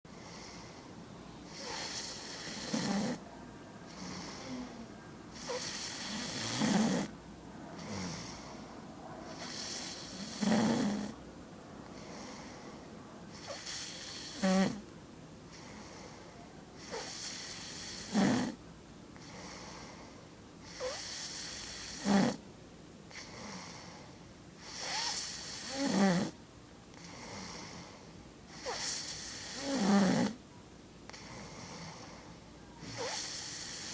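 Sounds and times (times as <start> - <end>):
person snoring: 5.4 - 7.1, 9.5 - 11.2.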